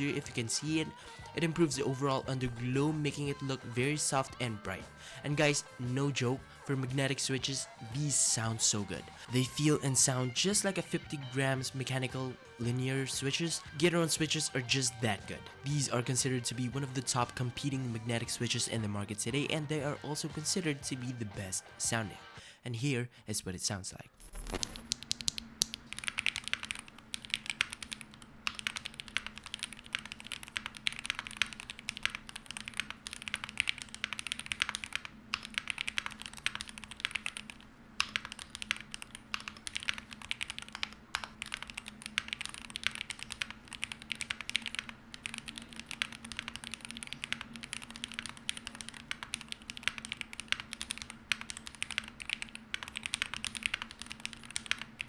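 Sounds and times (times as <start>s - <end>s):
faint steady hum: 0.0s - 55.0s
fast keyboard typing: 24.4s - 55.0s.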